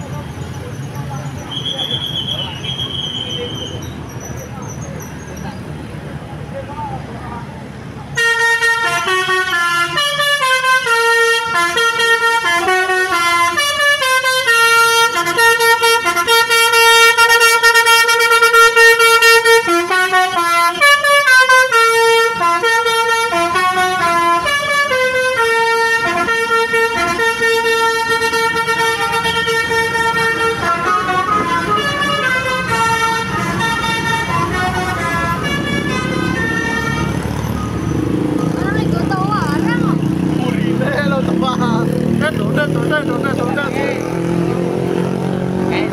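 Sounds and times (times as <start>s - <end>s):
multi-tone musical vehicle horn: 8.1s - 40.8s.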